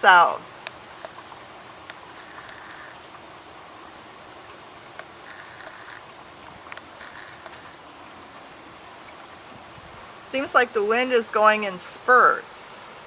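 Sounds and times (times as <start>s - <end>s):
gusting wind: 0.0s - 10.5s
rain hiss: 0.0s - 13.0s.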